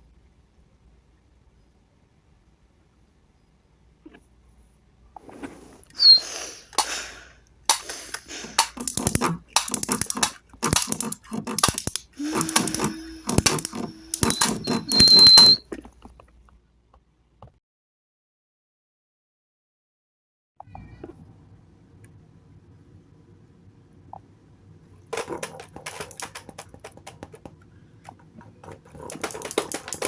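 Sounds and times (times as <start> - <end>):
short high squeals: 6.0 - 7.0, 12.2 - 15.6
steady low hum: 6.6 - 14.8
objects clattering and rattling: 7.7 - 16.2, 25.1 - 30.0.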